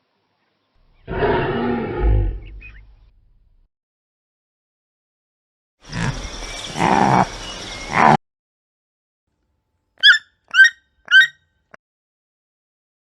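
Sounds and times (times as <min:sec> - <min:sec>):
short high animal calls: 0:10.0 - 0:11.4.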